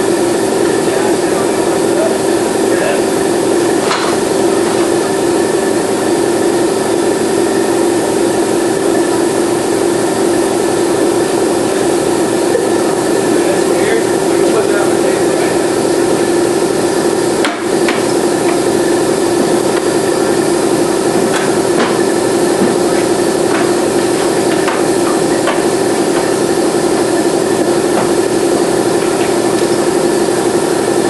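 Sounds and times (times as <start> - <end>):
steady loud hum: 0.0 - 31.0
tool knocks and taps: 21.2 - 22.0, 22.6 - 23.7, 24.5 - 26.3, 27.9 - 28.2.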